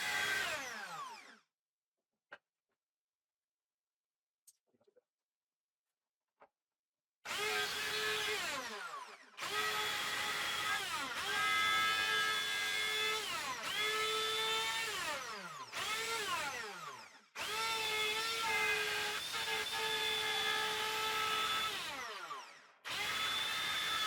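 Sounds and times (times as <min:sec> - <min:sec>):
power tool motor whining: 0:00.0 - 0:01.4, 0:07.3 - 0:24.0.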